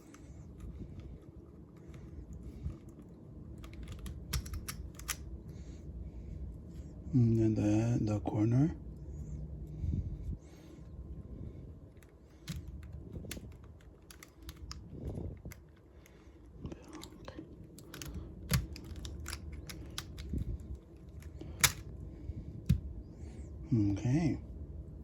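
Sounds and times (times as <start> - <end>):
plastic puzzle cube pieces clicking: 3.6 - 5.2, 12.4 - 15.8, 16.9 - 20.5, 21.1 - 21.8
sharp plastic snap: 21.5 - 21.9.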